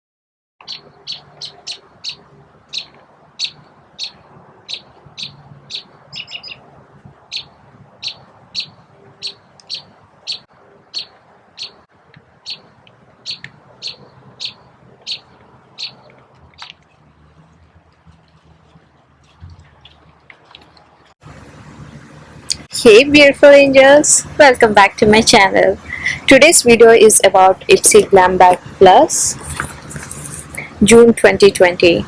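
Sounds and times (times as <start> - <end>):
bird chirping: 0.6 - 20.9.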